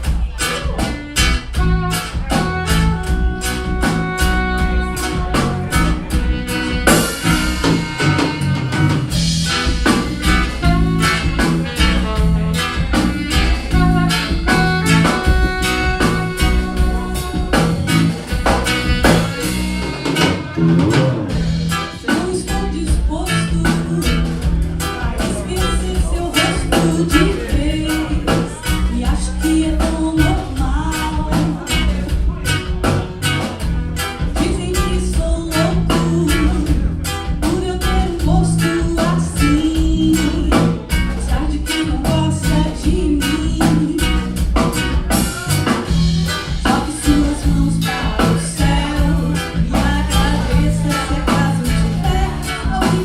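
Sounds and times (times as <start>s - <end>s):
drum kit beat: 0.0s - 53.0s
electric bass: 0.0s - 53.0s
alto saxophone melody: 0.4s - 53.0s.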